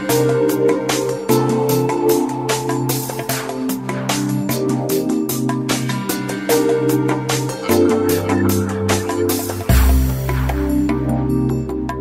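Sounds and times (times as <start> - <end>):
electronic music with beat: 0.0 - 12.0.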